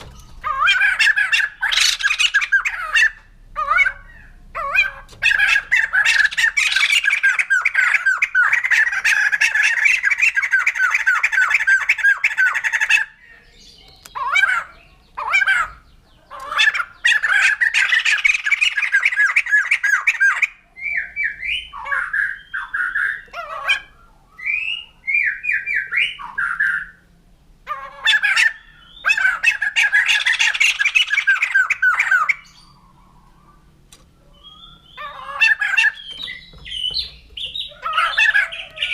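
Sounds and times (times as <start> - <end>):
bird cackling chatter: 0.0 - 38.9
whistled bird notes: 17.7 - 27.0, 34.2 - 38.9.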